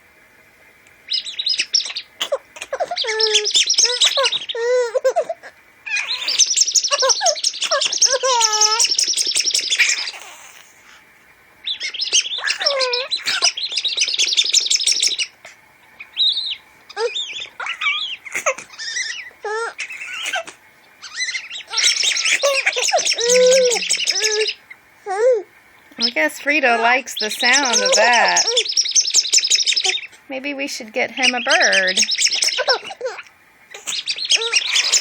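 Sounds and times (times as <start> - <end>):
bird-call whistle trilling: 1.1 - 4.7, 5.9 - 10.2, 11.6 - 15.4, 16.0 - 20.4, 21.0 - 24.8, 27.0 - 30.2, 31.2 - 32.9, 33.8 - 35.0.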